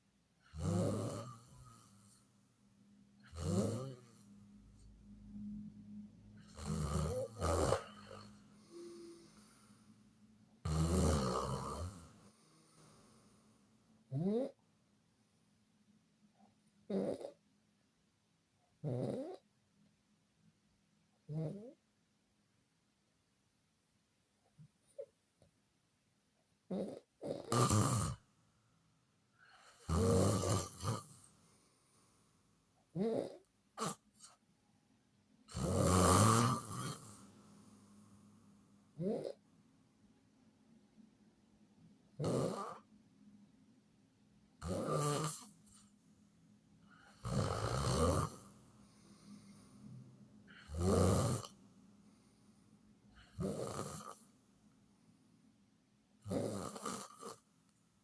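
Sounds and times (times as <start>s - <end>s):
person snoring: 0.5s - 2.2s, 3.2s - 4.3s, 6.4s - 9.9s, 10.7s - 13.3s, 14.1s - 14.6s, 26.7s - 28.2s, 29.5s - 31.2s, 33.0s - 34.0s, 35.5s - 37.9s, 42.2s - 42.9s, 44.6s - 45.8s, 47.0s - 49.8s, 50.5s - 51.6s, 53.2s - 54.2s, 56.3s - 57.4s
quiet breathing: 0.9s - 10.6s, 11.8s - 13.9s, 28.5s - 32.6s, 36.6s - 39.4s, 44.8s - 47.3s, 48.1s - 50.8s, 51.4s - 53.5s.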